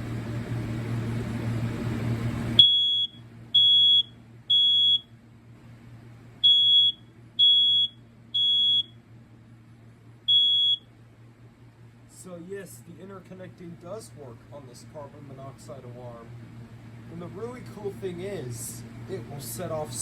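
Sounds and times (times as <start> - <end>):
steady hiss with low hum: 0.0 - 20.0
smoke alarm beeping: 2.6 - 5.1, 6.4 - 9.0, 10.3 - 10.9.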